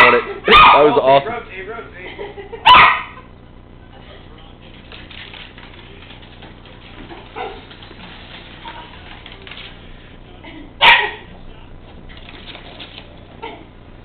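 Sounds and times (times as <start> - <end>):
dog barking: 0.0 - 1.0, 2.6 - 3.3, 7.3 - 7.7, 10.8 - 11.3.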